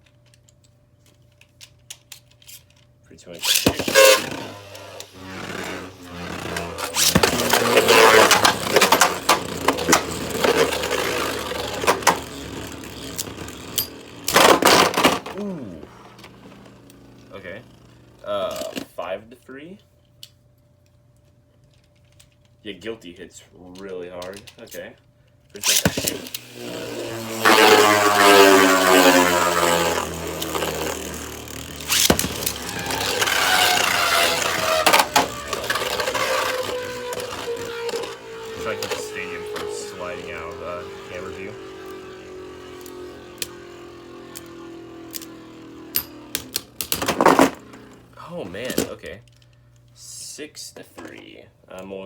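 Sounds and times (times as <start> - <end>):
spinning tops clacking: 3.4 - 17.2, 27.1 - 48.2
spinning tops whirring: 3.4 - 18.7, 25.6 - 48.9.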